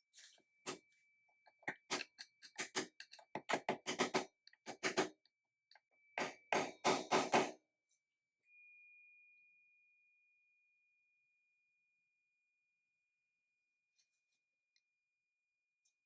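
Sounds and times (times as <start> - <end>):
sharp knocks on metal: 6.2 - 7.6.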